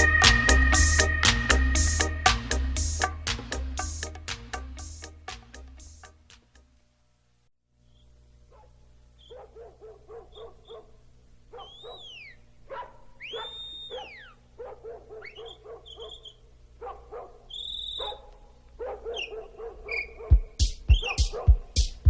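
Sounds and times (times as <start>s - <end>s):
whistled notes rising and falling: 0.0s - 3.0s, 13.2s - 14.4s.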